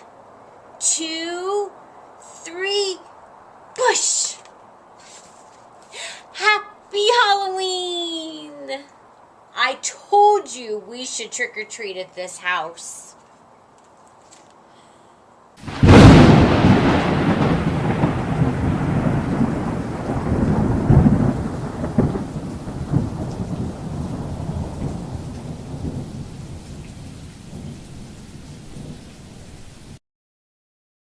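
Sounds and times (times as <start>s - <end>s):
thunder crack and rolling rumble: 15.6s - 30.0s.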